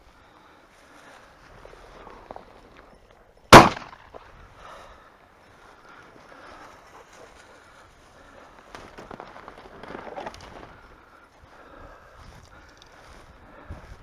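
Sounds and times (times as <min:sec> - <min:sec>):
footsteps crunching through dry vegetation: 0:06.1 - 0:14.0.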